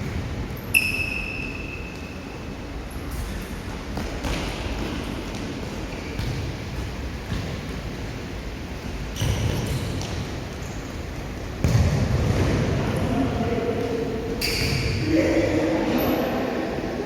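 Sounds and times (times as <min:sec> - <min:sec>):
ball kicked and bouncing: 0:03.9 - 0:07.8, 0:11.6 - 0:12.6.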